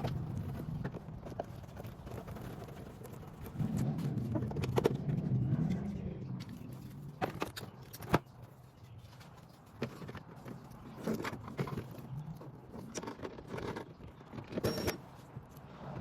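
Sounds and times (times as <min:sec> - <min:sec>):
tools and parts clicking: 0:09.7 - 0:15.7.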